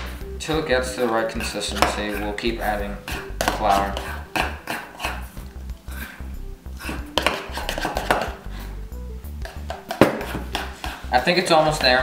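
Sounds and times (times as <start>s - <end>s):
music with bass beat: 0.0s - 12.0s
spoon scraping mixing bowl: 0.7s - 5.3s, 6.9s - 8.4s.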